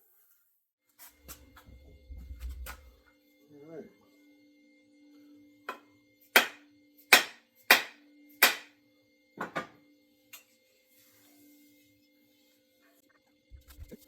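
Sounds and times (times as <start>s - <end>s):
axe head knocked onto wooden handle: 6.4s - 6.6s, 7.2s - 8.7s.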